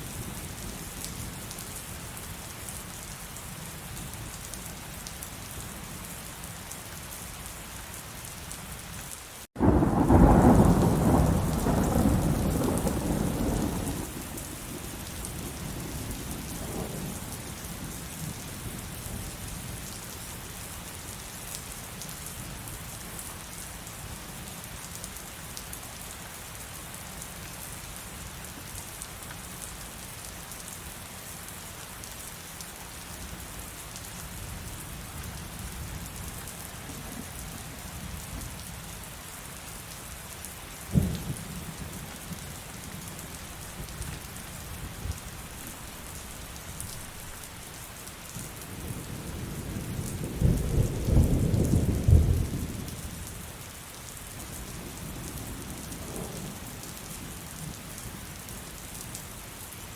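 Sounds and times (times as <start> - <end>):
heavy rain: 0.0 - 59.9
sharp thunderclap: 9.6 - 14.1
thunder rumble: 9.6 - 14.4.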